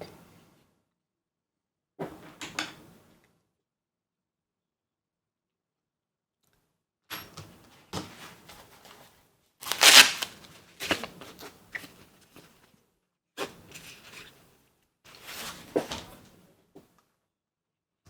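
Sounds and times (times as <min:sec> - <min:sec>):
small objects clattering and rustling: 0:09.6 - 0:11.5.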